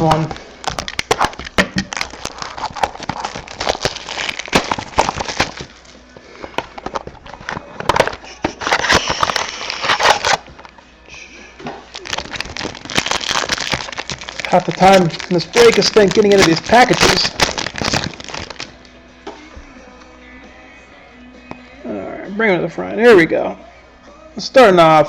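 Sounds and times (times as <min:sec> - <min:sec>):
card pack packaging tearing: 0:00.0 - 0:10.8, 0:11.9 - 0:18.9.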